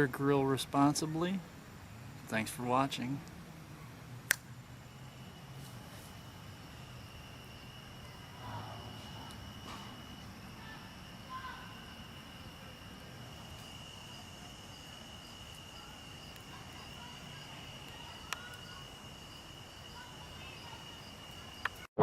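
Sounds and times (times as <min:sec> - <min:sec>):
insects buzzing: 0:00.0 - 0:21.9
faint chirps: 0:05.0 - 0:21.9.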